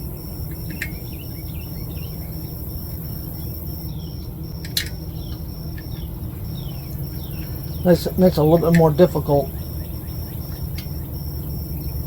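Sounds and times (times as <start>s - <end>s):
falling chirps: 0.0s - 12.0s
pulsing insect trill: 0.0s - 12.0s
sharp clicks: 4.6s - 6.0s.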